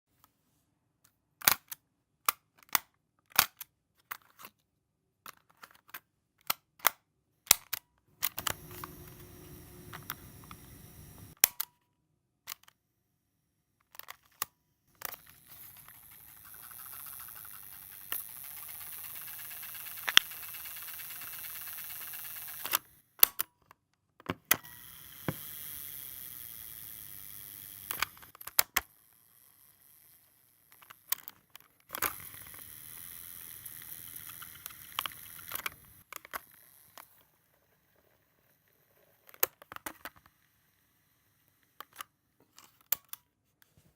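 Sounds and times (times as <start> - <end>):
tape recorder button clicks: 8.3 - 11.3
tape transport hiss and hum: 8.4 - 11.4.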